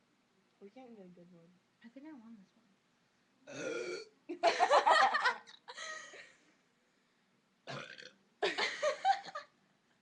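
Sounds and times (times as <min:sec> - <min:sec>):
girl burping: 0:03.5 - 0:04.1, 0:07.7 - 0:08.2
girl laughing: 0:04.3 - 0:06.4, 0:08.4 - 0:09.5.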